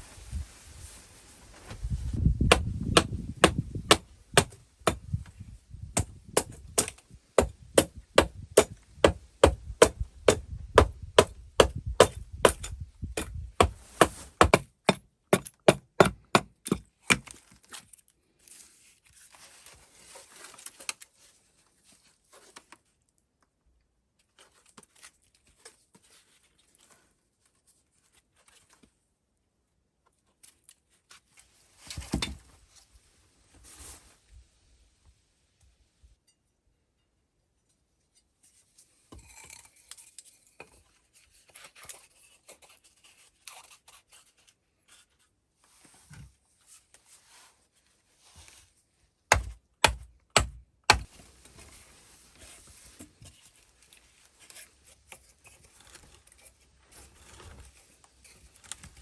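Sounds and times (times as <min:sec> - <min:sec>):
hand tool striking wood: 0:02.4 - 0:05.2, 0:06.0 - 0:17.3, 0:49.3 - 0:51.1.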